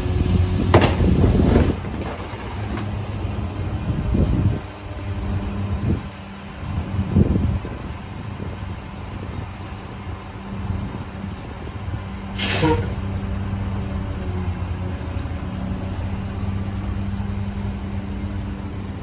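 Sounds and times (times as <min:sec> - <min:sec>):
garbage truck engine humming: 0:00.0 - 0:06.0
air brake hiss: 0:12.4 - 0:13.0.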